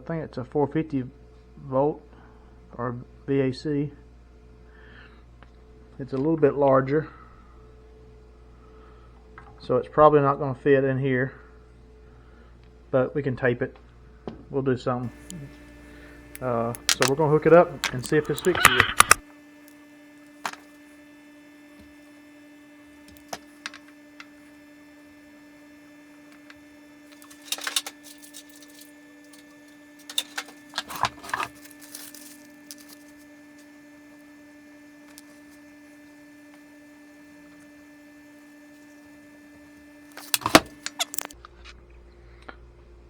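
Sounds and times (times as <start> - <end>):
clicks and rustles of handling: 15.0 - 41.4
faint steady hum: 15.0 - 42.5.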